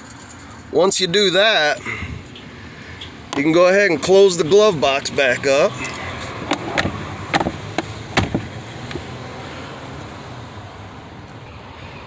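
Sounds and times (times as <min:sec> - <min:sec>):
plastic glove box clicking shut: 0:06.4 - 0:09.0.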